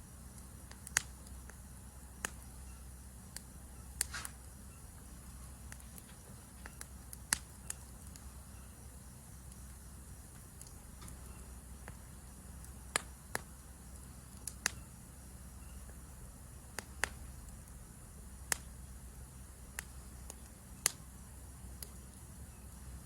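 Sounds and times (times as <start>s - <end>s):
low fire rumble: 0.0s - 23.0s
campfire pops and snaps: 0.3s - 1.6s, 2.2s - 2.5s, 3.3s - 4.6s, 5.2s - 8.4s, 9.4s - 14.8s, 16.7s - 17.8s, 18.4s - 18.9s, 19.6s - 21.1s, 21.7s - 22.3s.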